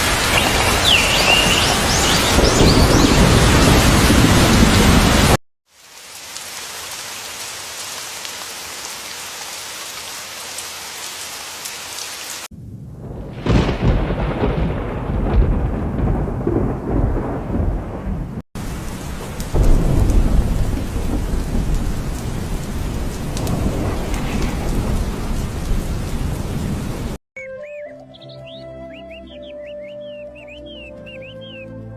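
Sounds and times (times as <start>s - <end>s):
thunder rumbling: 0.0s - 5.4s, 12.5s - 27.2s
rain falling: 0.0s - 27.2s.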